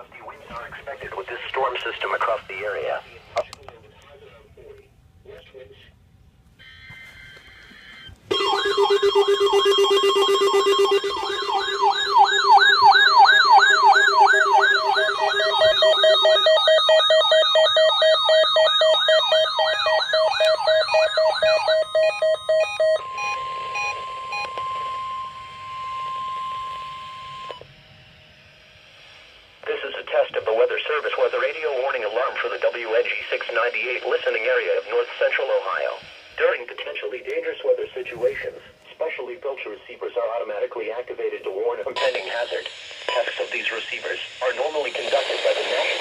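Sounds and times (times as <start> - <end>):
radio static hiss: 0.0 - 6.0, 13.3 - 17.9, 28.6 - 46.0
pulsing electronic beeps: 7.9 - 27.6, 42.0 - 46.0
steady alert tone: 8.3 - 24.4
warbling siren-like sweep: 8.3 - 27.6.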